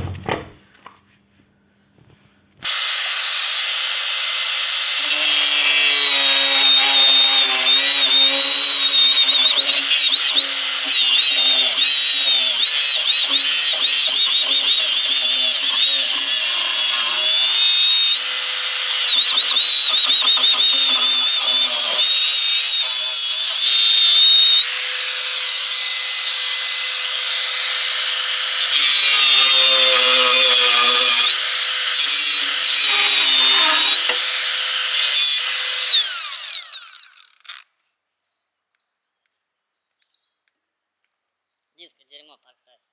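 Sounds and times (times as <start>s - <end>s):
power tool motor whine: 2.6s - 37.7s.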